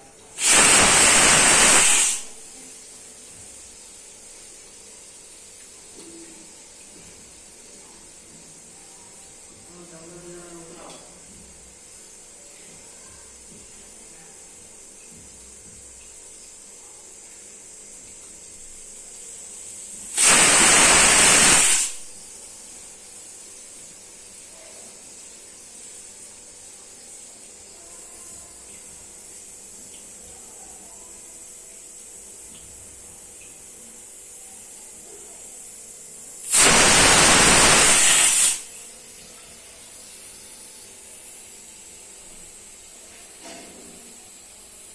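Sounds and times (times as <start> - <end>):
pressure cooker whistling: 0.4 - 2.4, 20.1 - 22.2, 36.5 - 38.8.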